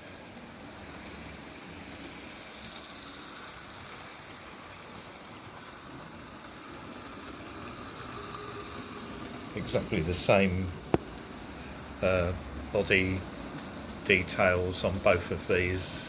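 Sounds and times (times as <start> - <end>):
model train motors whirring: 0.0 - 16.0.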